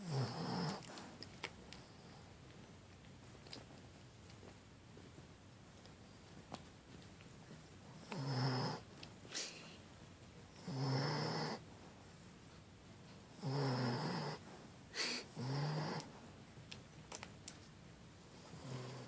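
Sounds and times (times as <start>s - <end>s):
dog snoring loudly: 0.0s - 0.9s, 8.1s - 8.8s, 10.6s - 11.6s, 13.4s - 14.4s, 15.0s - 16.1s, 18.4s - 19.0s.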